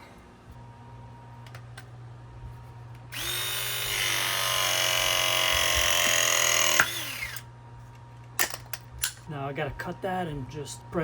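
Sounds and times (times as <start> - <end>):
press tool motor running: 3.1 - 7.4.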